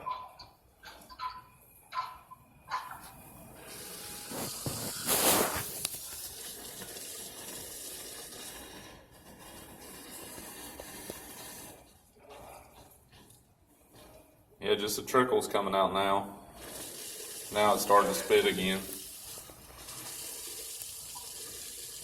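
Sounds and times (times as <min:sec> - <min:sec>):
air and water hissing from pipe: 0:03.0 - 0:14.4, 0:16.4 - 0:22.0.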